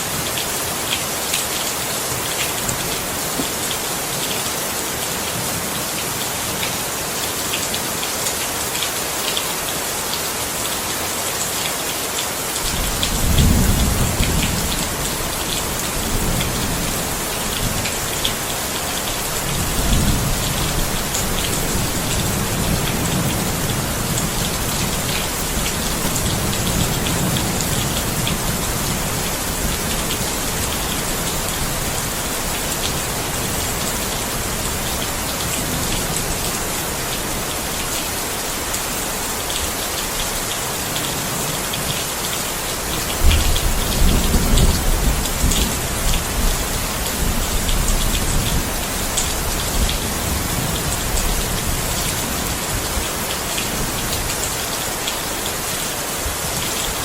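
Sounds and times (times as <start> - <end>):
steady rain: 0.0 - 57.0
rolling thunder: 12.7 - 18.1, 19.3 - 34.0.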